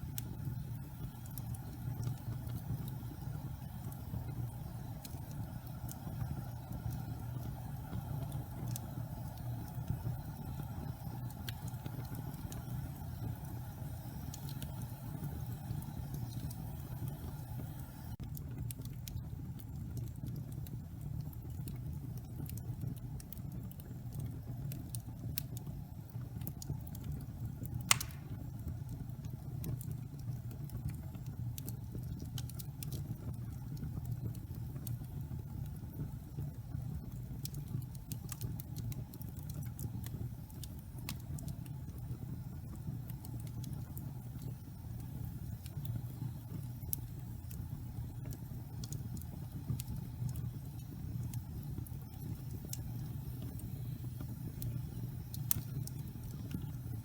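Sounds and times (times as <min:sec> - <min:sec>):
fire crackling: 0:00.0 - 0:57.0
fire rumbling in fireplace: 0:00.0 - 0:57.0
loud fire pop: 0:27.9 - 0:28.4.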